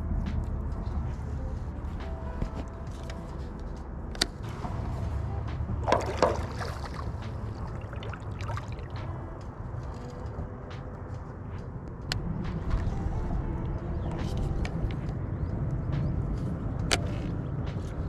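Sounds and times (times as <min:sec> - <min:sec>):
low wind rumble: 0:00.0 - 0:18.0
splashy clatter: 0:05.8 - 0:09.1
water sloshing against boat hull: 0:05.8 - 0:09.4.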